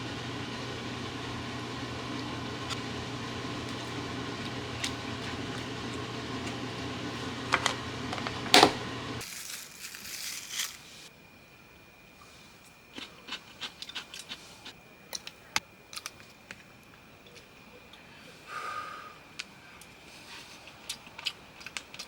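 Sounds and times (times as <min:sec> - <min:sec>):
motor hum: 0:00.0 - 0:09.3.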